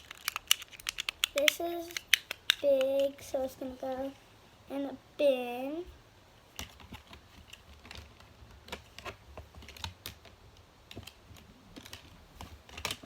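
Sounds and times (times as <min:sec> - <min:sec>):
fidget toys clicking and tapping: 0:00.0 - 0:04.1.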